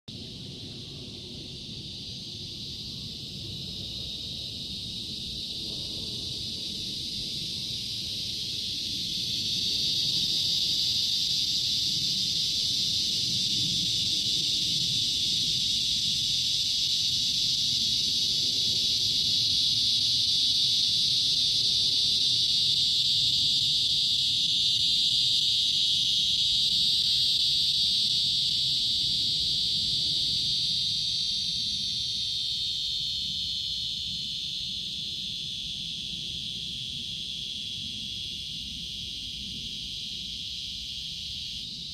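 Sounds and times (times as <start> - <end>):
insect chorus buzzing: 0.1 - 41.9.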